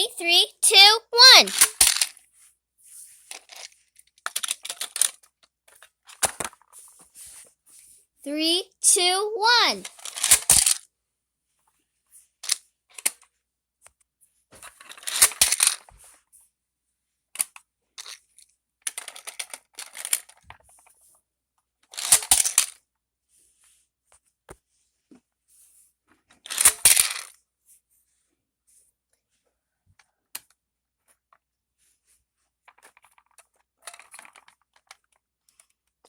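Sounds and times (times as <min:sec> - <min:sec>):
plastic toys clattering: 0:01.5 - 0:02.2, 0:03.3 - 0:06.8, 0:14.6 - 0:15.9, 0:18.9 - 0:21.0, 0:21.9 - 0:22.8, 0:26.5 - 0:27.4, 0:32.7 - 0:35.7.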